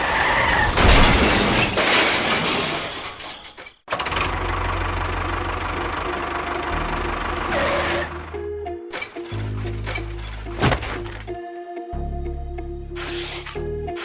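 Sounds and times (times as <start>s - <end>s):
engine running unevenly: 3.9s - 8.4s.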